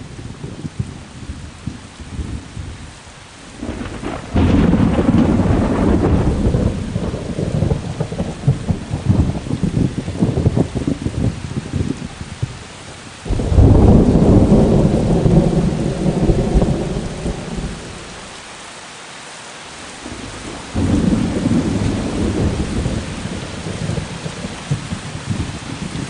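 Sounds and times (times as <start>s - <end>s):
steady rain hiss: 0.0s - 26.0s
rolling thunder: 3.5s - 11.8s, 13.3s - 18.4s, 20.0s - 26.0s.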